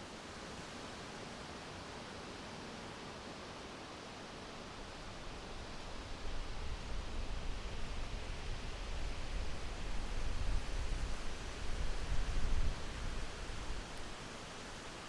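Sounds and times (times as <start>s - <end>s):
wind gusting through trees: 4.2s - 15.0s.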